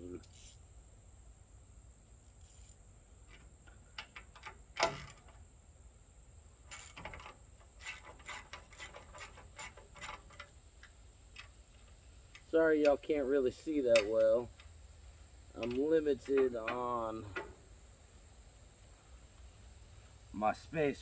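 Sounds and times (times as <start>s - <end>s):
hand tools clinking on metal: 12.4s - 14.7s, 15.6s - 17.6s.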